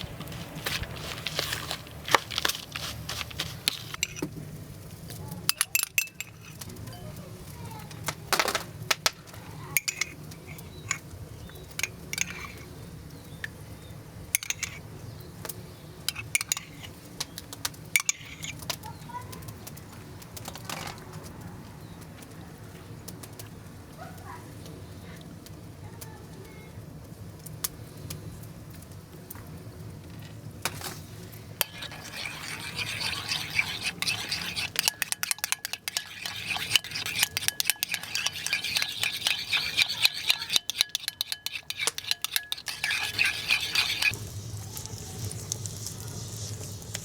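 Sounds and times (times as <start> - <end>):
dishes and utensils clinking: 2.4 - 4.3, 5.5 - 7.1, 9.8 - 11.0, 11.8 - 12.6, 16.1 - 16.9, 31.6 - 44.2.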